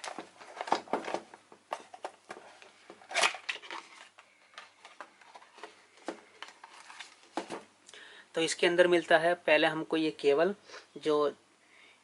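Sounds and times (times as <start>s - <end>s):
plastic packaging clicks and rustles: 0.0s - 7.7s.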